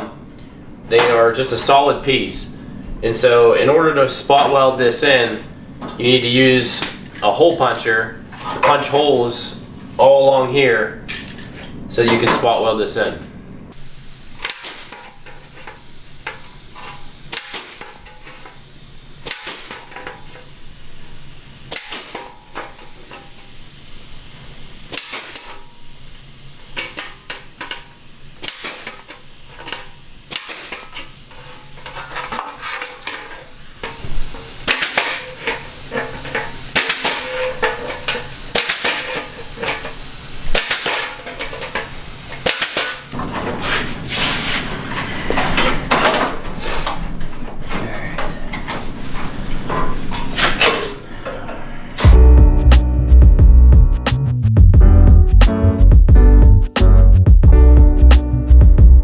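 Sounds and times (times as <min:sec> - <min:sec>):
welding arc crackling and sizzling: 0:13.7 - 0:43.2.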